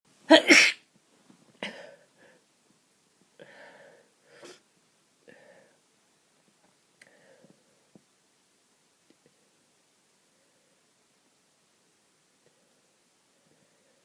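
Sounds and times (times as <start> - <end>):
person sneezing: 0.3 - 0.8
person sniffling: 3.5 - 4.7.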